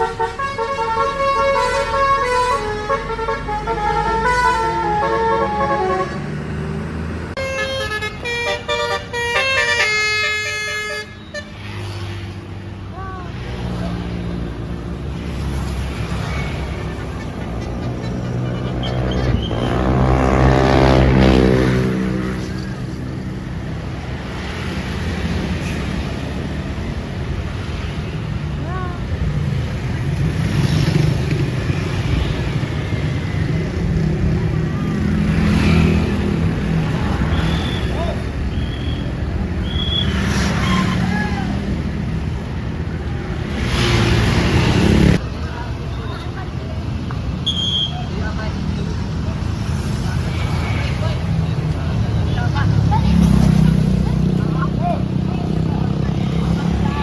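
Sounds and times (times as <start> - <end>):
bus driving past: 0.0 - 7.4.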